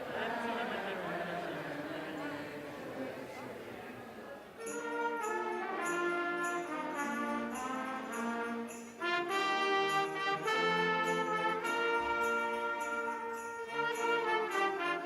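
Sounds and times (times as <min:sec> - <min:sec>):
brass instrumental music: 0:04.6 - 0:15.0
sleigh bells jingling: 0:04.6 - 0:15.0.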